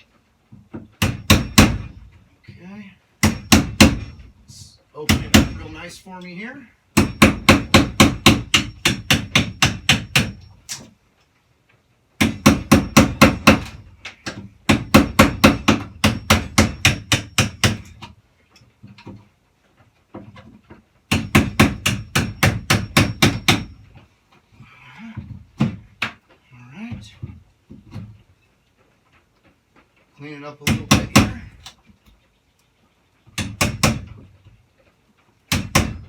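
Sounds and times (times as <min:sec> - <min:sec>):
hammer striking chisel: 0:01.0 - 0:02.0, 0:03.2 - 0:04.3, 0:05.1 - 0:05.8, 0:07.0 - 0:10.9, 0:12.2 - 0:18.1, 0:21.1 - 0:23.8, 0:30.6 - 0:31.5, 0:33.4 - 0:34.2, 0:35.5 - 0:36.0.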